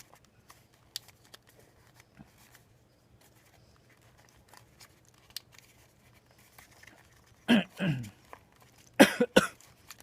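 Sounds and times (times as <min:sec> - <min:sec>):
faint plastic clicks and ticks: 0:00.0 - 0:02.6, 0:03.2 - 0:07.4.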